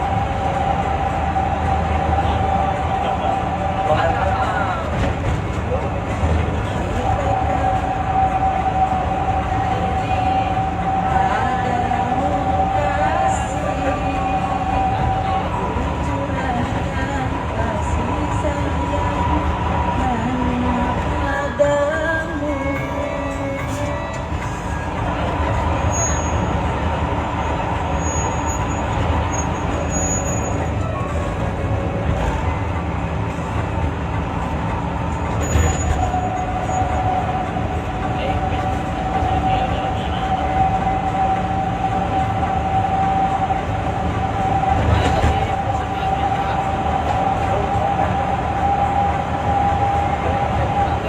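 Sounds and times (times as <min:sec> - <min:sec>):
bus engine and road noise: 0:00.0 - 0:51.0.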